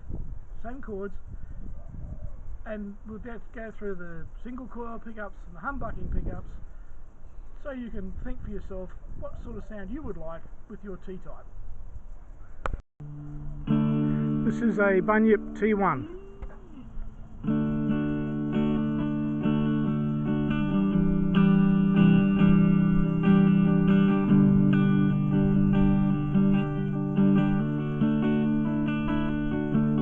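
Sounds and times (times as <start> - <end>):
electric guitar strummed chords: 13.0 - 16.5, 17.4 - 30.0.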